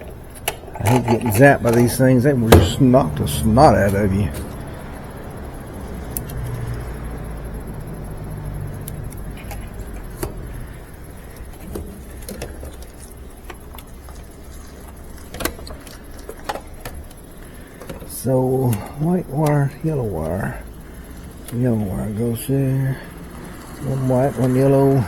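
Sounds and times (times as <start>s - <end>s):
low steady hum: 0.0s - 25.0s
small metallic clicks and rattling: 8.7s - 19.6s.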